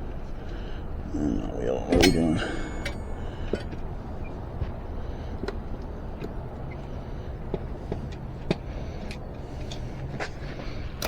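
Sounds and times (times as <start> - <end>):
steady low rumble: 0.0 - 7.5.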